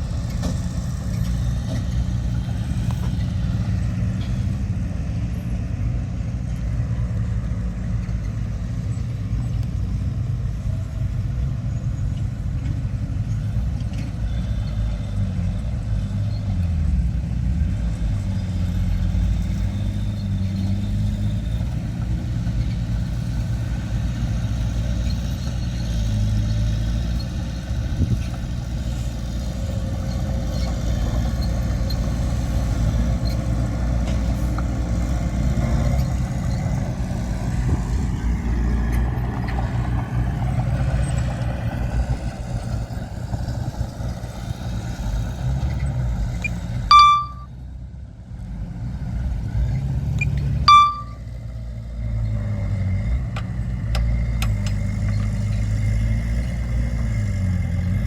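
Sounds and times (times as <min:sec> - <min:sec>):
heavy diesel machinery running: 0:00.0 - 0:58.0
loud high-pitched ringing: 0:46.9 - 0:47.5, 0:50.7 - 0:51.2.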